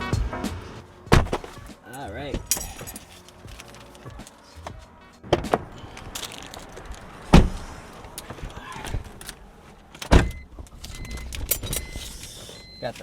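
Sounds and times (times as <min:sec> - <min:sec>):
sharp knocks and clunks: 0:01.1 - 0:01.7, 0:04.7 - 0:05.8.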